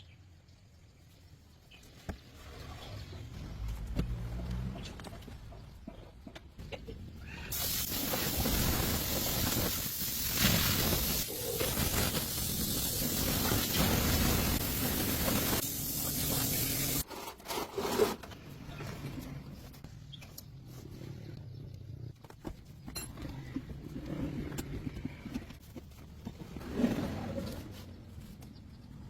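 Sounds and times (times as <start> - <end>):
steady spraying hiss: 7.5 - 17.0.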